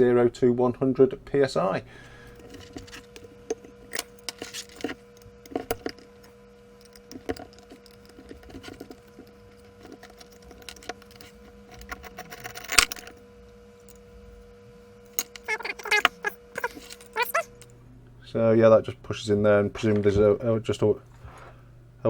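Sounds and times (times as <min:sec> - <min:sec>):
faint steady hum: 0:00.0 - 0:22.0
small parts and tools clicking: 0:02.3 - 0:13.2, 0:15.1 - 0:17.8.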